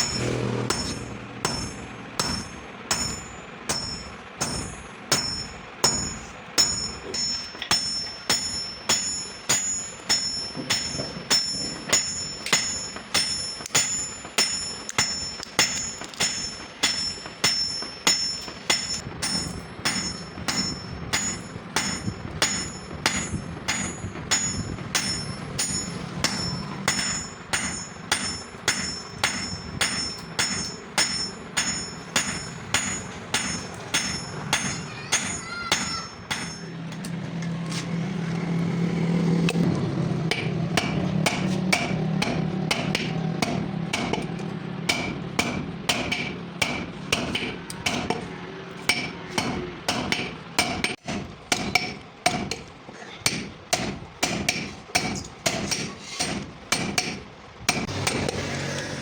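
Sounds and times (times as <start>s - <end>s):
low hum: 0.0s - 34.8s
hammer ringing on anvil: 0.0s - 37.0s, 40.3s - 48.3s, 48.9s - 52.6s, 53.2s - 58.3s.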